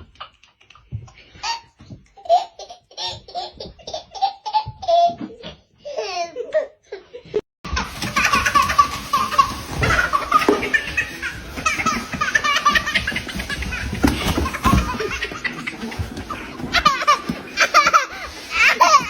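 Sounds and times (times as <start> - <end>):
baby laughing: 7.7 - 19.0
background music: 8.2 - 19.0.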